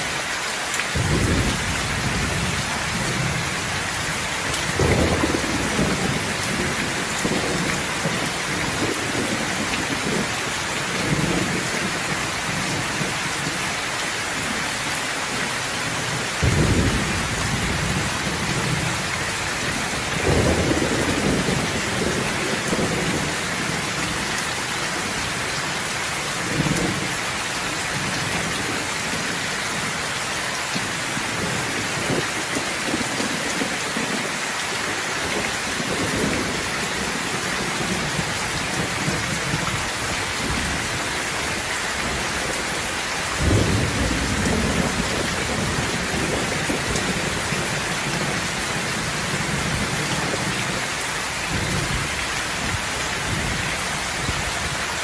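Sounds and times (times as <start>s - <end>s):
heavy rain hissing: 0.0s - 55.0s
thunder rumbling: 1.0s - 13.2s, 16.0s - 24.4s, 35.3s - 50.8s.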